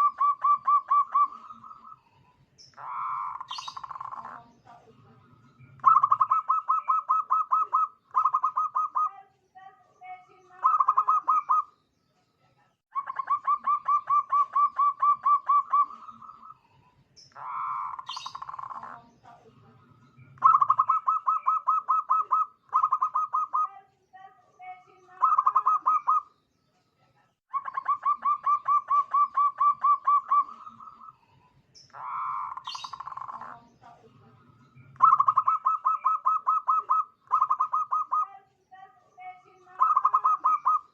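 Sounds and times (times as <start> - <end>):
dove cooing: 0.0 - 2.0, 2.8 - 9.1, 10.6 - 11.7, 13.0 - 16.6, 17.4 - 23.7, 25.2 - 26.3, 27.5 - 31.2, 31.9 - 38.3, 39.7 - 40.9
buzzy bird calls: 0.0 - 4.8, 13.0 - 19.4, 20.2 - 23.7, 27.5 - 34.0, 34.9 - 38.3.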